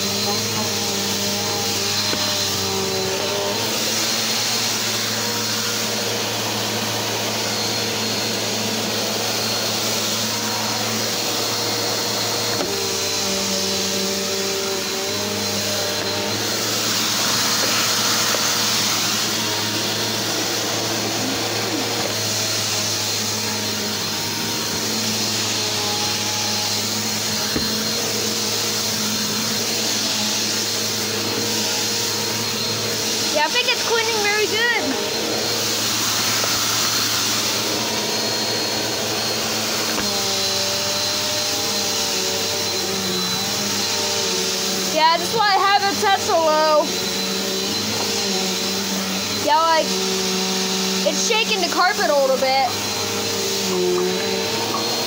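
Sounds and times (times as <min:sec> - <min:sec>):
vacuum cleaner on carpet: 0:00.0 - 0:55.0.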